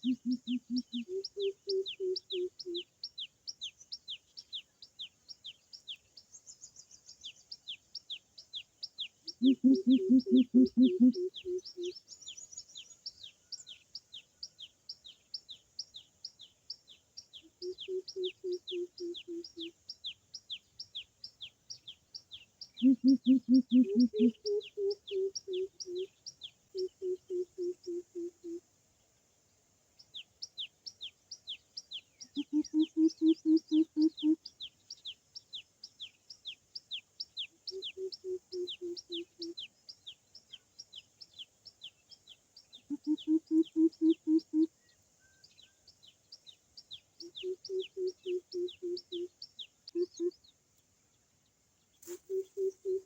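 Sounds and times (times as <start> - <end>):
small bird chirping: 0.0 - 53.0
deep bird hoots: 9.4 - 11.9, 22.8 - 26.1.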